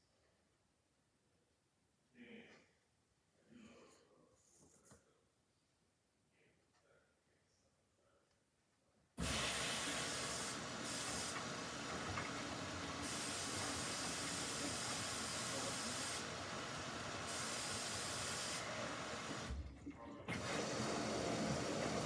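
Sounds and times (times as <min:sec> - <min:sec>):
water rushing into washing machine: 0:09.2 - 0:22.0.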